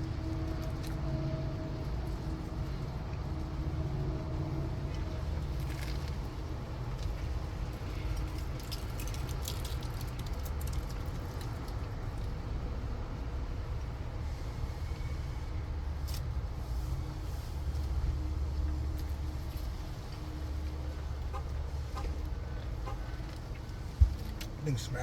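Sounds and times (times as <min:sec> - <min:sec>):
car engine idling: 0:20.0 - 0:25.0.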